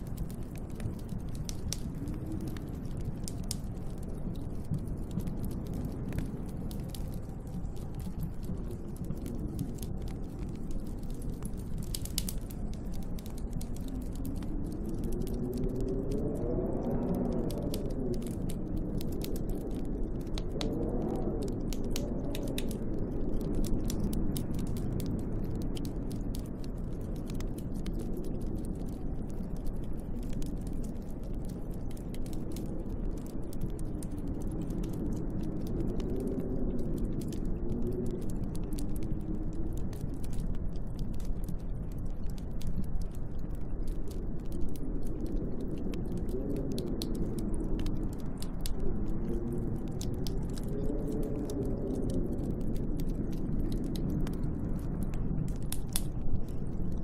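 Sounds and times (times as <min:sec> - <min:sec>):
fire crackling and popping: 0:00.0 - 0:57.0
howling storm wind: 0:00.0 - 0:57.0.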